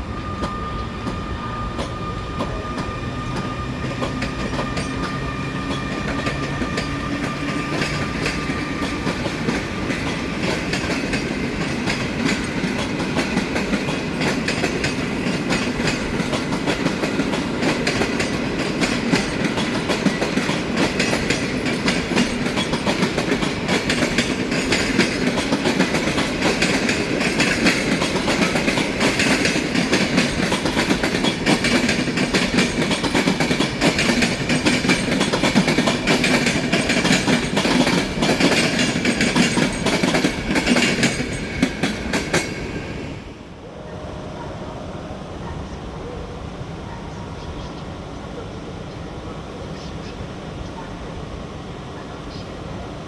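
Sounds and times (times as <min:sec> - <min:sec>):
train wheels clattering over rails: 0:00.0 - 0:43.4.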